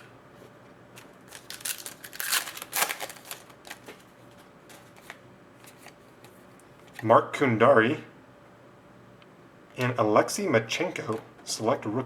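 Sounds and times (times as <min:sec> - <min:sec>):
trading cards rustling and scraping: 0:00.0 - 0:07.0.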